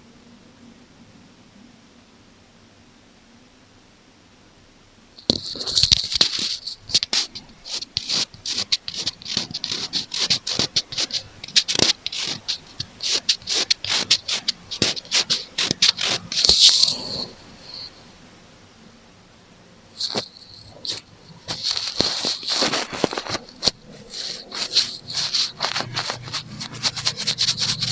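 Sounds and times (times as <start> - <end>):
tapping and scratching on microphone: 5.2 - 17.8, 20.0 - 27.9.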